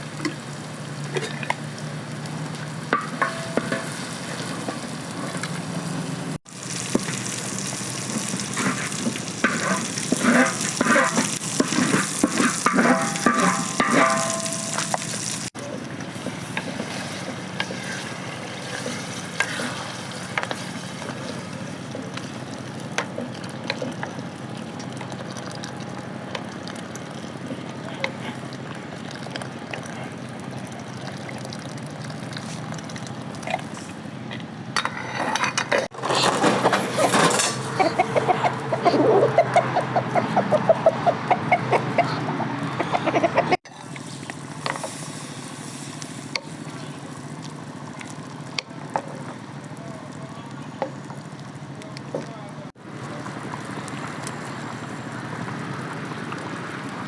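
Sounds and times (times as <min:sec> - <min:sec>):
food sizzling in a pan: 0:00.0 - 0:23.2, 0:43.7 - 0:48.4
utensil scraping a pan: 0:08.5 - 0:15.2, 0:16.1 - 0:21.1, 0:34.8 - 0:38.3.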